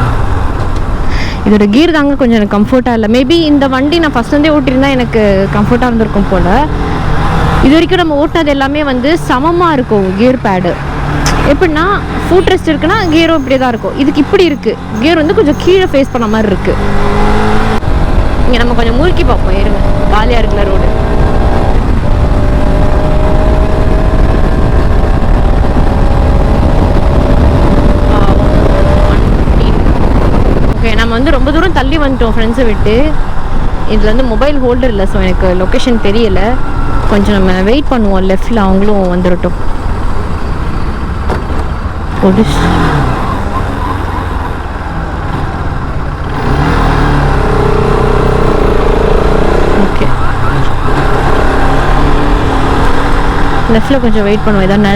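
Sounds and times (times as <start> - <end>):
motorcycle engine under throttle: 0.0 - 54.9
wind rumble on microphone: 0.0 - 54.9.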